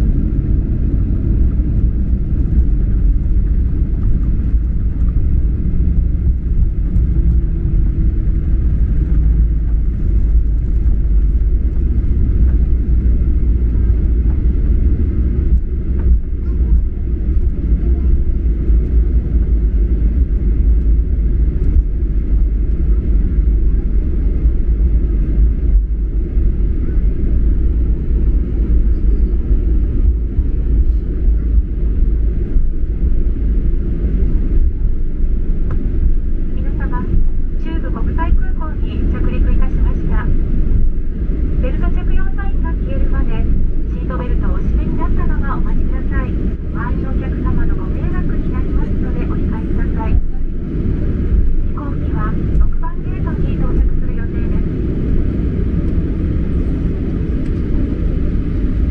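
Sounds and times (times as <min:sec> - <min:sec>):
airliner cabin engine rumble: 0:00.0 - 0:58.9.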